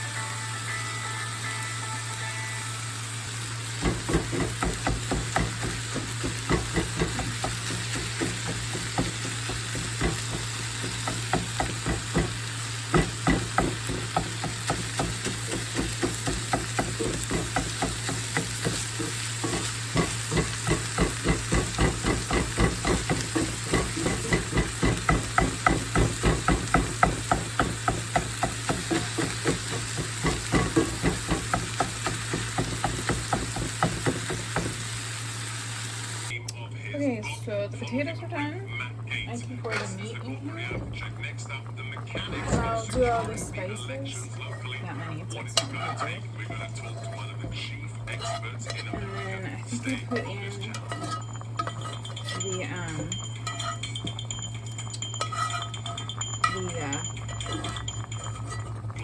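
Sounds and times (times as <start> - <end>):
food sizzling: 0.0 - 36.4, 37.0 - 59.0
utensil scraping pan: 3.9 - 34.7, 42.1 - 59.0
steady low hum: 36.3 - 59.0.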